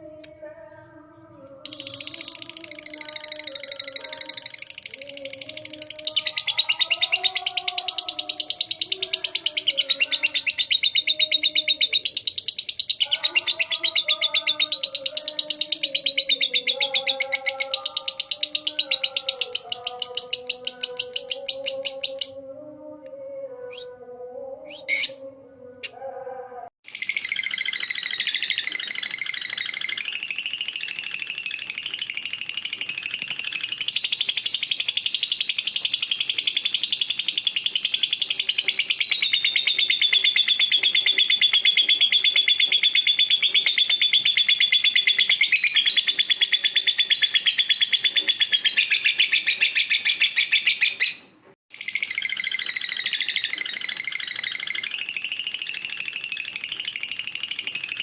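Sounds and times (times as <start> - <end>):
lovebird chattering trill: 1.6 - 22.4.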